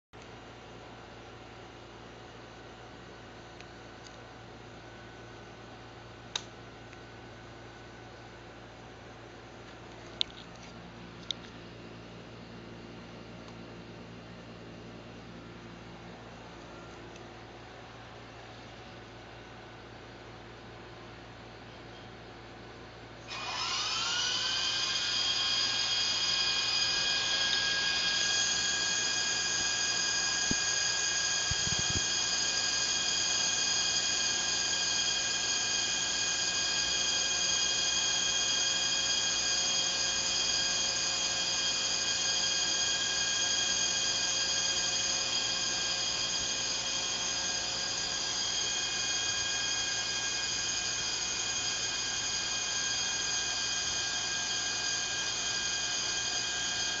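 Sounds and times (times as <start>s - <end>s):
small motor whining: 23.3s - 57.0s.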